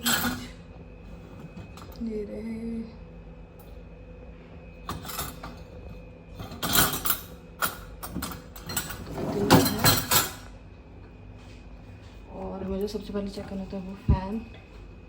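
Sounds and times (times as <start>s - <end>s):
dishes and racks clattering: 0.0s - 0.6s, 4.9s - 5.7s, 6.4s - 10.5s.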